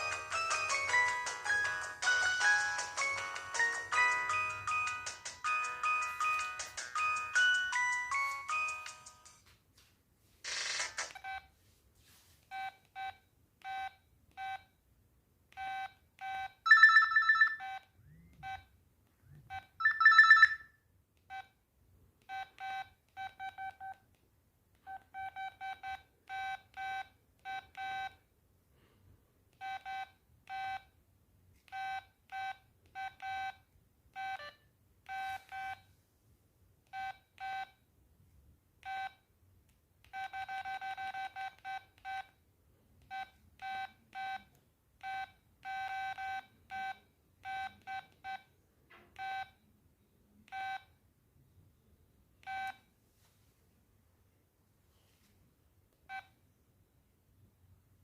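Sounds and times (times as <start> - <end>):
longer phone tones: 15.6 - 18.7, 19.3 - 21.5
phone keypad beeps: 15.6 - 18.7, 19.4 - 20.6, 24.8 - 28.2, 38.8 - 39.2, 40.1 - 42.3, 43.1 - 48.5, 49.2 - 49.6, 50.5 - 50.9, 52.4 - 52.9.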